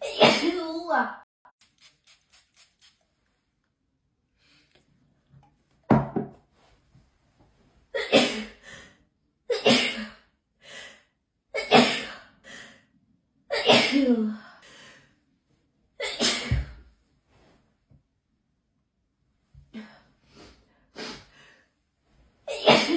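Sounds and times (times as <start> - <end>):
person sneezing: 16.0 - 16.8, 22.5 - 22.9.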